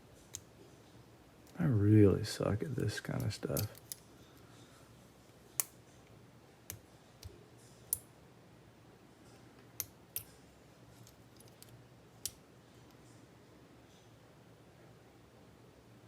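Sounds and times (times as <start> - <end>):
sharp clicks of tools on lock: 3.2 - 4.0.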